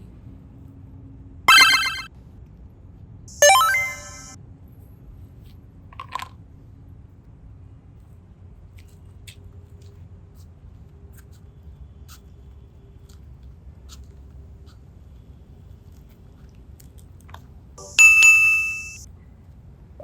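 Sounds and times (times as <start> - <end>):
bright bell ding: 1.5 - 2.1, 3.3 - 4.4, 17.8 - 19.0.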